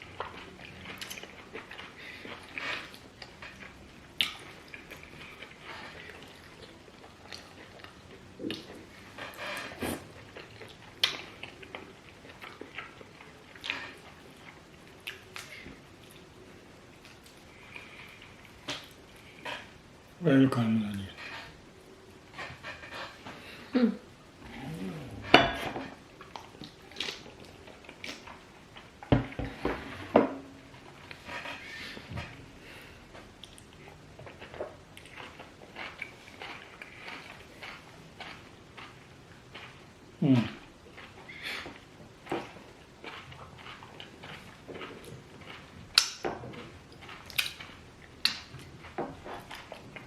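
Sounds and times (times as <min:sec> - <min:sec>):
wet chewing and mouth smacks: 0:00.0 - 0:09.0, 0:09.6 - 0:19.4, 0:26.1 - 0:29.0, 0:33.2 - 0:40.1, 0:40.8 - 0:50.0
dishes and cutlery clattering: 0:25.2 - 0:26.0.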